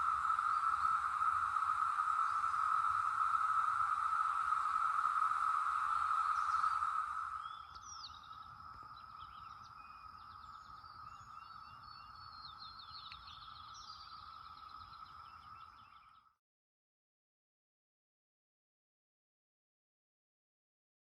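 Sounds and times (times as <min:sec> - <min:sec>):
birds chirping: 0:00.0 - 0:16.3
cicadas droning: 0:00.0 - 0:16.4.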